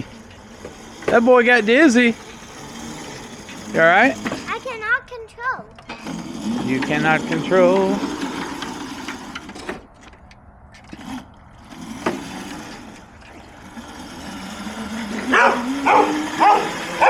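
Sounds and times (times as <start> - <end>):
electric motor whining: 0.0 - 5.0, 5.8 - 17.0
dog yipping: 15.3 - 17.0.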